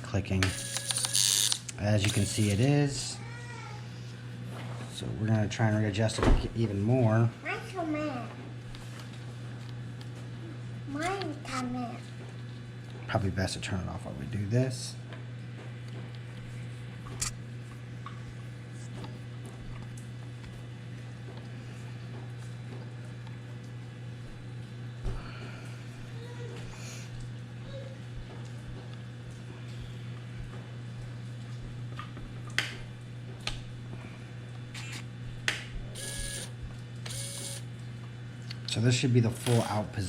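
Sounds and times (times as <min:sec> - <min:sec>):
steady low hum: 0:00.0 - 0:40.0.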